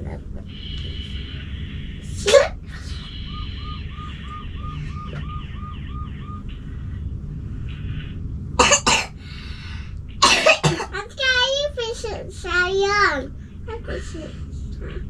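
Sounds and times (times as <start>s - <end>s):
steady low hum: 0.0s - 15.0s
electronic chirps: 3.0s - 6.6s.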